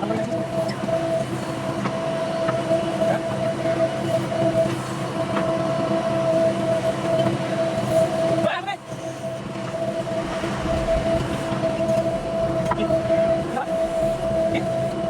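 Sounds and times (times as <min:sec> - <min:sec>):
steady high whine: 0:00.0 - 0:15.0
diesel engine running: 0:09.0 - 0:15.0.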